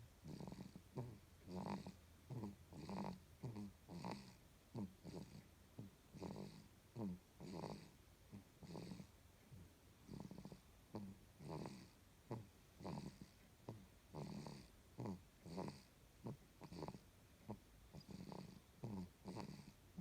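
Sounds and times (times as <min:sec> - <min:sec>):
baby snoring: 0:00.2 - 0:09.1, 0:10.0 - 0:20.0.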